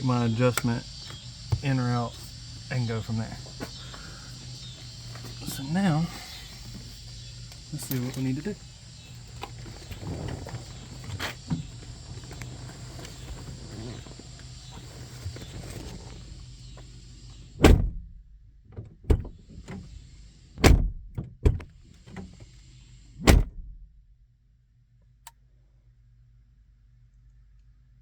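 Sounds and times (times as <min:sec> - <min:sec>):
car door thunks: 0:00.4 - 0:02.2, 0:08.9 - 0:16.8, 0:17.6 - 0:20.0, 0:20.6 - 0:22.5, 0:23.2 - 0:23.9.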